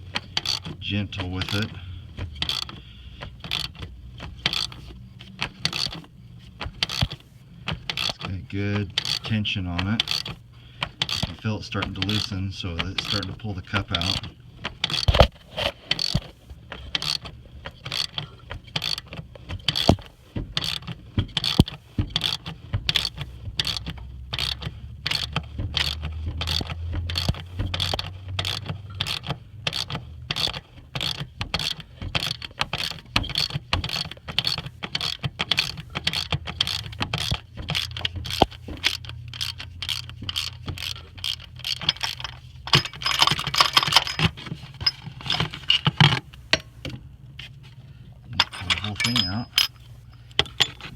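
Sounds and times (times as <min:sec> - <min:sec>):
ratchet wrench clicking: 0:00.0 - 0:00.8, 0:01.4 - 0:02.8, 0:03.4 - 0:06.1, 0:06.8 - 0:07.2, 0:07.8 - 0:15.3, 0:15.9 - 0:16.2, 0:16.8 - 0:45.9
metallic rattling: 0:25.1 - 0:46.8, 0:48.4 - 0:50.9.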